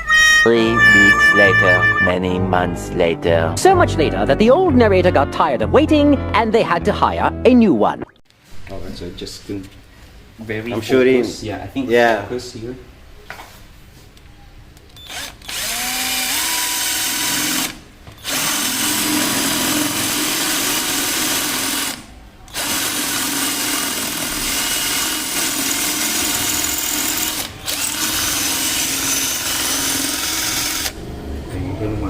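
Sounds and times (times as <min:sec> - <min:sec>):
cordless drill whining: 0:15.1 - 0:31.0.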